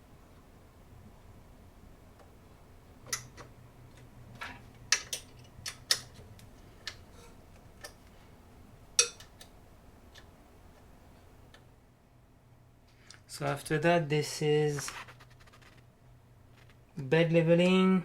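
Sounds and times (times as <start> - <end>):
hard parts clicking and tapping: 3.0 - 7.1.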